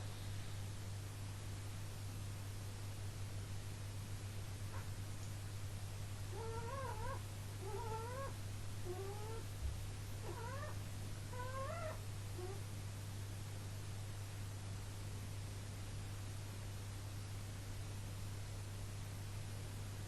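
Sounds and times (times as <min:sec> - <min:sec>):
steady low hum: 0:00.0 - 0:20.0
rabbit snoring squeaky whine: 0:06.3 - 0:09.6, 0:10.2 - 0:12.7.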